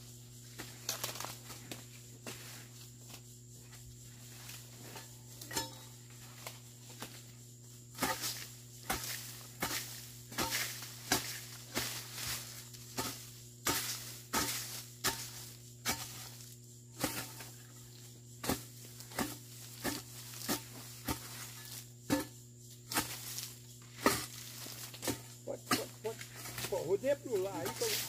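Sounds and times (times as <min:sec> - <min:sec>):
hoe chopping into soil: 0:08.0 - 0:28.0.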